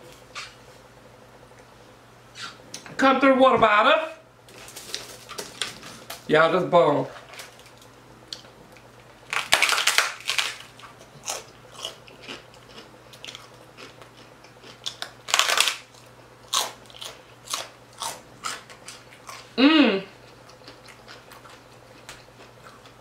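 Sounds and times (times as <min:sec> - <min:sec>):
crunchy chewing: 0:07.4 - 0:23.0.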